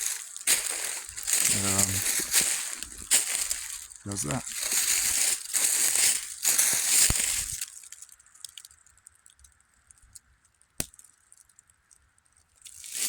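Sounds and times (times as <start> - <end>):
footsteps crunching frozen leaves: 0.0 - 8.6, 12.7 - 13.0
faint ticks: 6.4 - 13.0.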